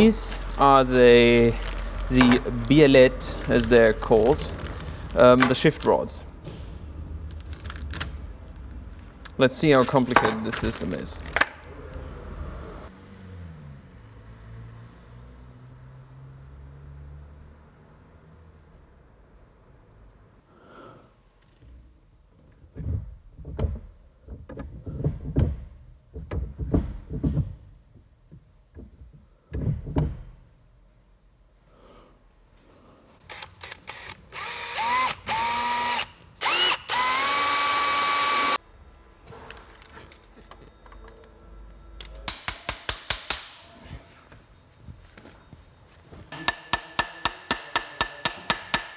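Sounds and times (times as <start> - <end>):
metal tools clanking: 9.5 - 11.6
power drill whining: 33.3 - 38.6
sharp metallic clicks: 42.3 - 43.7, 46.4 - 48.9.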